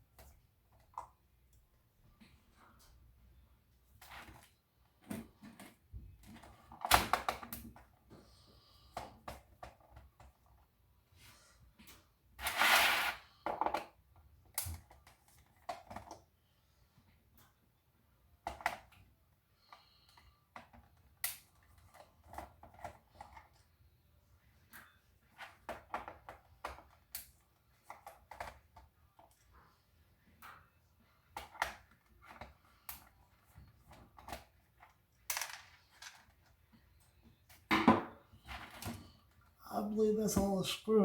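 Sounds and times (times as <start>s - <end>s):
plastic keyboard clicks and rattles: 14.5s - 16.2s.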